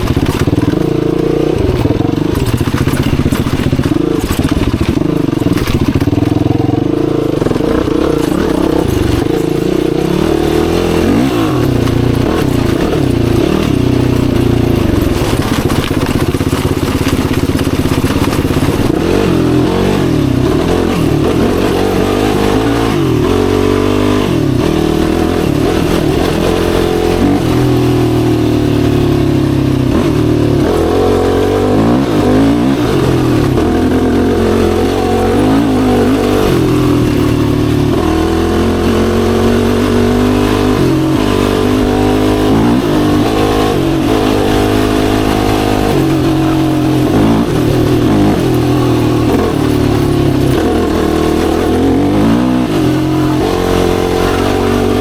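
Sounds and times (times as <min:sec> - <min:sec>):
quad bike engine revving: 0:00.0 - 0:55.0.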